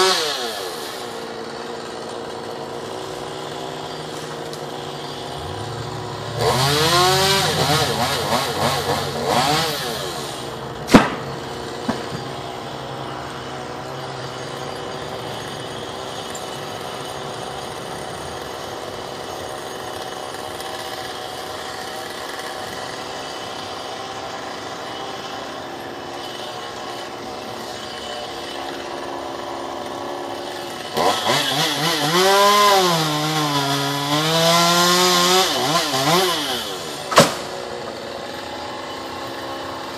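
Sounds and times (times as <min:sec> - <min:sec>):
chainsaw engine idling and revving: 0:00.0 - 0:39.9
sharp knock: 0:10.9 - 0:11.3, 0:37.1 - 0:37.4.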